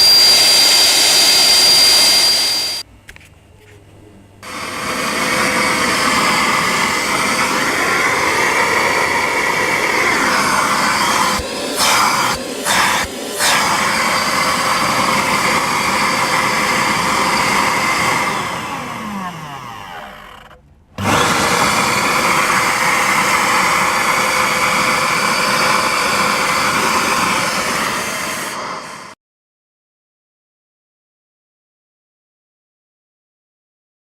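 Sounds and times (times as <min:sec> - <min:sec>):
motor winding down: 0:00.0 - 0:02.8, 0:04.4 - 0:29.1
vacuum cleaner motor running: 0:00.0 - 0:02.8, 0:04.4 - 0:29.2.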